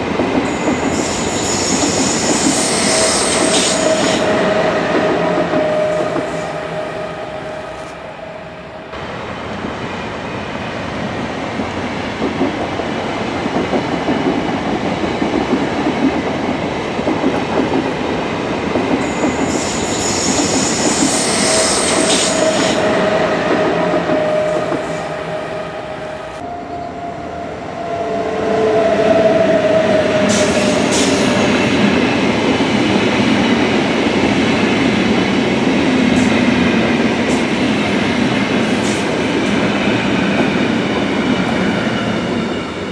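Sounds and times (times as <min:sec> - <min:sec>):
train rumbling on rails: 0:00.0 - 0:42.9
high-pitched wheel squeal: 0:01.0 - 0:08.5, 0:19.8 - 0:31.7.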